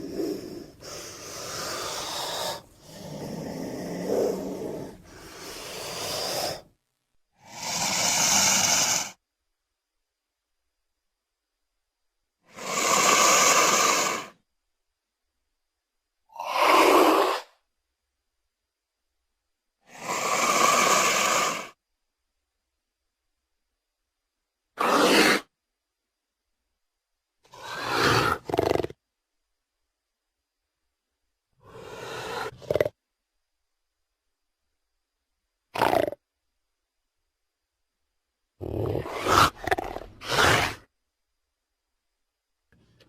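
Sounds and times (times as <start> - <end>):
creature hissing calls: 0.0 - 6.7, 7.4 - 9.2, 12.5 - 14.4, 16.3 - 17.6, 19.9 - 21.8, 24.8 - 25.5, 27.5 - 28.9, 31.6 - 32.9, 38.6 - 40.9.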